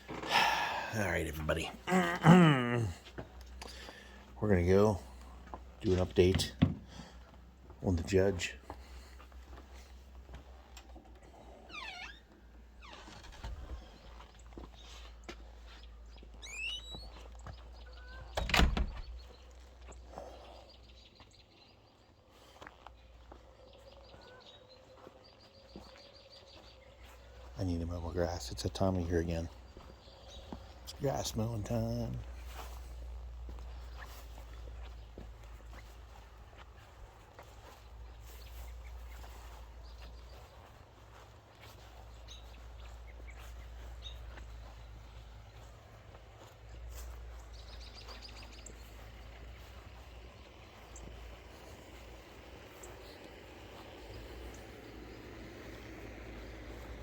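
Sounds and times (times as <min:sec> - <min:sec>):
birds chirping: 0:00.0 - 0:57.0
door shutting heavily: 0:18.4 - 0:19.1.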